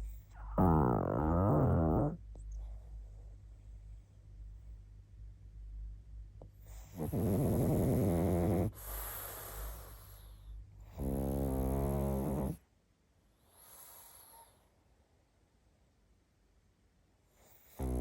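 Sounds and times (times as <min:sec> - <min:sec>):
dog snoring: 0:00.0 - 0:02.9, 0:06.6 - 0:12.6, 0:13.5 - 0:14.6, 0:17.4 - 0:18.0
dog breathing softly: 0:06.4 - 0:10.6, 0:13.4 - 0:14.8.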